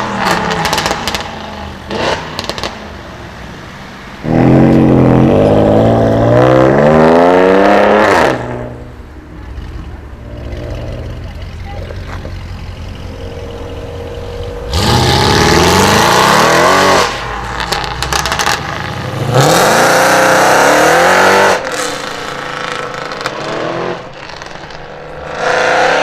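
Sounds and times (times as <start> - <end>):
exhaust crackles and pops: 0.0 - 1.5, 2.1 - 2.8, 17.0 - 19.1, 22.0 - 25.2
car engine idling and revving: 0.0 - 26.0.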